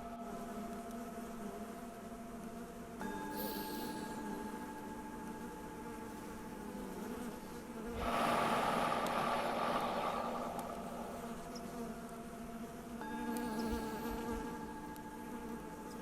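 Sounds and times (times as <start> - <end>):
singing bowl ringing: 3.0 - 5.0, 13.0 - 15.3
bees buzzing: 6.2 - 16.0.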